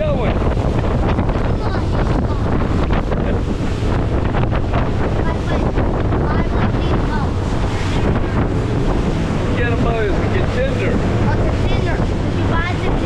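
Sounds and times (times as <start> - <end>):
rushing water: 0.0 - 13.0
wind buffeting microphone: 0.0 - 13.0.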